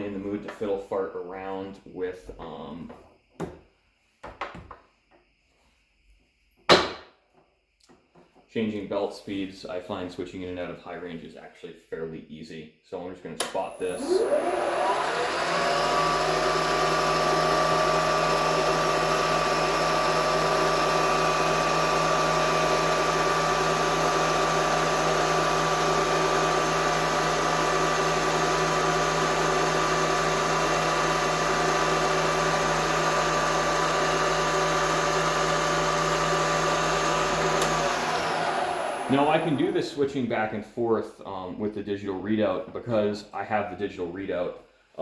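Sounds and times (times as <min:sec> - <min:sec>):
milling machine motor whine: 0:13.7 - 0:40.0.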